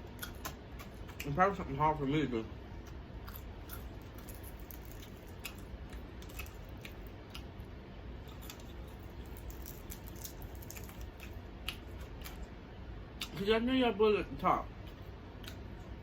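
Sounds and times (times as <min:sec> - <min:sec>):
chewing crispy fried chicken: 0:00.0 - 0:01.8, 0:02.7 - 0:13.5, 0:14.8 - 0:16.0.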